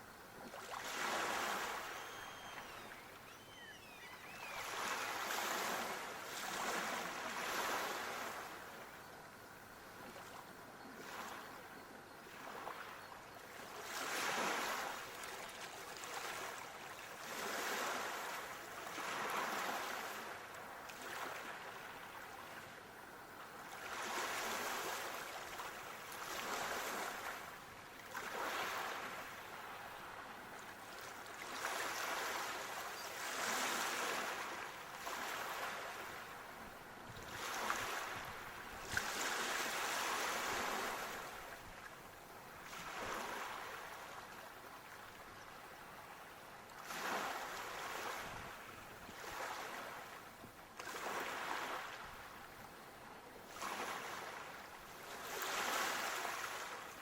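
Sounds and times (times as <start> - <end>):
ocean waves washing onto shore: 0.4 - 3.3, 4.4 - 8.8, 13.6 - 41.8, 46.8 - 52.5, 53.5 - 57.0.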